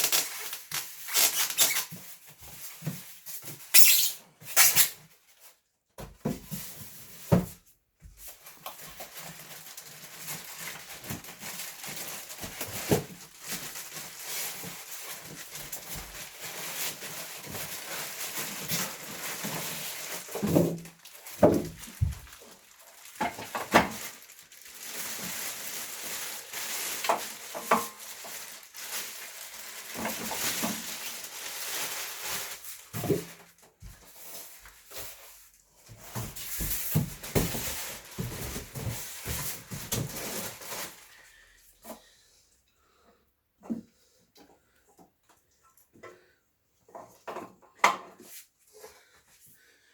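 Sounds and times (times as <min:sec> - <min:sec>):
packaging rustling: 0:00.0 - 0:02.2, 0:08.3 - 0:41.2
short squeaky scrapes: 0:01.1 - 0:01.9, 0:03.7 - 0:05.0.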